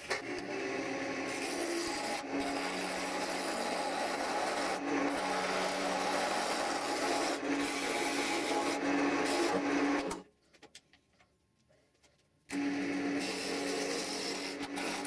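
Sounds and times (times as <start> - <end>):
turning tool cutting wood: 0.0 - 10.2, 12.5 - 15.0
lathe motor hum: 0.2 - 10.2.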